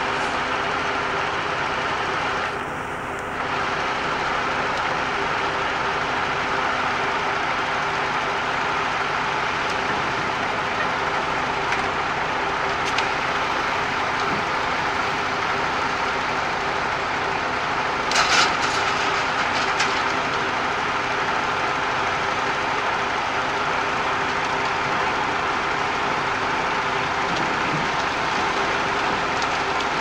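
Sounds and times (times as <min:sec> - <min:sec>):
truck diesel engine running: 0:00.0 - 0:30.0.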